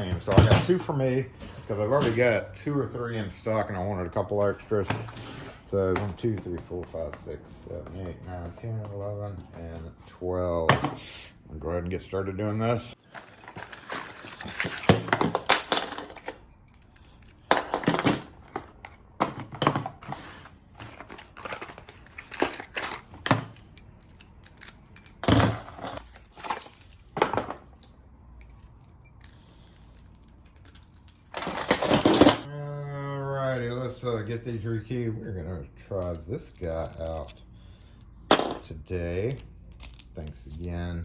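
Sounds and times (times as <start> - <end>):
padlocks and keys clinking: 4.7 - 5.7, 12.9 - 19.2, 20.0 - 32.5, 39.2 - 40.6.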